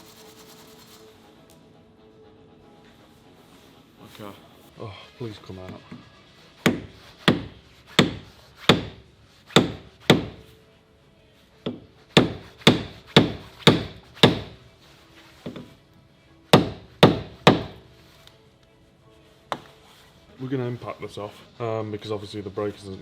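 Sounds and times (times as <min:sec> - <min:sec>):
hammer striking metal: 0:06.6 - 0:10.5, 0:11.6 - 0:14.6, 0:16.6 - 0:17.8.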